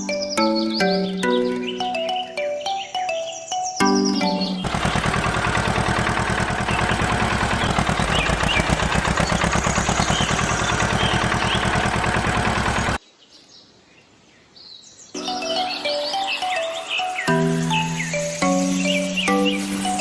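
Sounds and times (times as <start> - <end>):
birds chirping: 0.0 - 20.0
engine running: 4.4 - 13.0.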